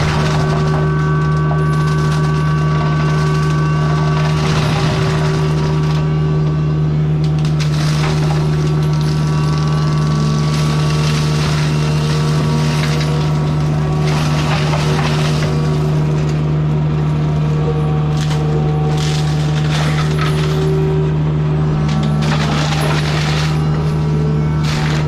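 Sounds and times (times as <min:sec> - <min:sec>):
mulcher diesel engine running: 0:00.0 - 0:25.0
mulching head grinding wood: 0:00.0 - 0:25.0
wood chipping and splintering: 0:07.2 - 0:20.9, 0:21.7 - 0:25.0.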